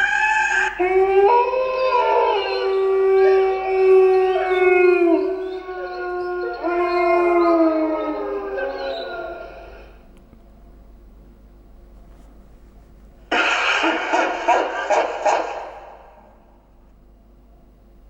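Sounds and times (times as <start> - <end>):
wolves howling: 0.0 - 10.1.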